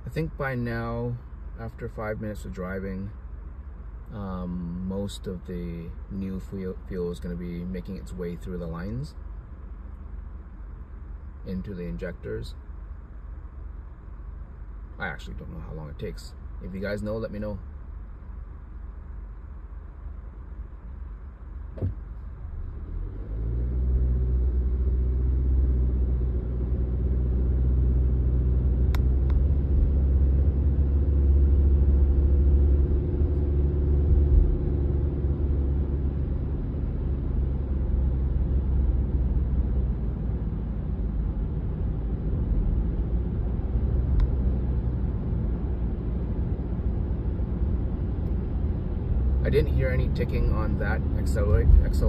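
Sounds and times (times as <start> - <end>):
road drone inside car: 0.0 - 52.0
car engine accelerating: 21.7 - 52.0.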